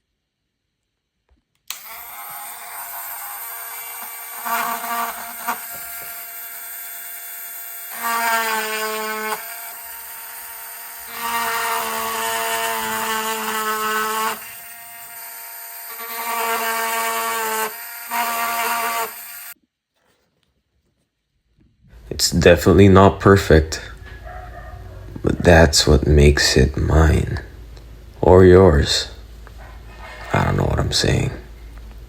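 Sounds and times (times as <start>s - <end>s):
rotary tool engraving whine: 1.7s - 19.6s.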